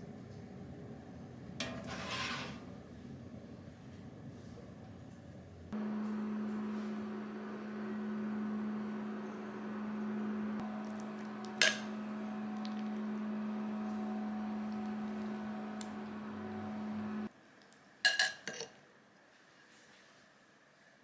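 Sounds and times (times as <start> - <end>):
microwave oven hum: 0.0 - 17.3
dishes clinking: 1.6 - 2.7.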